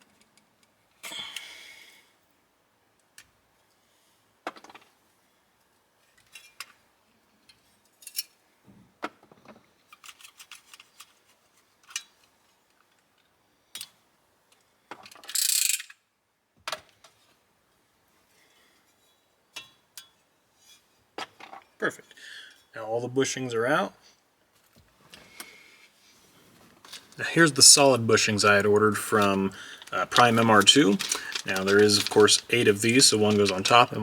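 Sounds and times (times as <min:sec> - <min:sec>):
hand tools clicking and tapping: 0:29.0 - 0:34.0.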